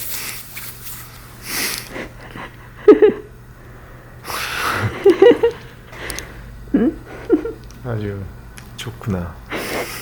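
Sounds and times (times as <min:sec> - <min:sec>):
woman breathing hard: 0:03.6 - 0:05.0.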